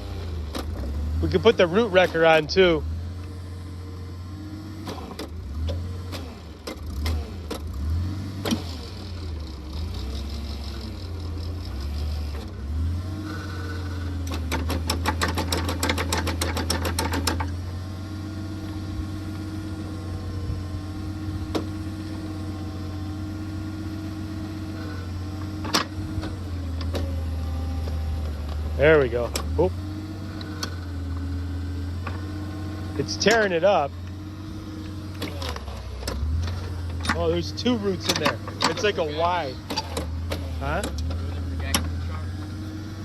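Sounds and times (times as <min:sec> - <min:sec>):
digging machine engine running: 0:00.0 - 0:43.0
rapid even clatter: 0:14.3 - 0:17.5.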